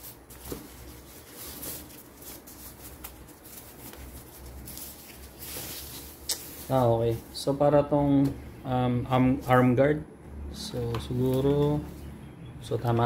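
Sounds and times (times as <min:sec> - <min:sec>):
packaging rustling: 0:00.0 - 0:07.4.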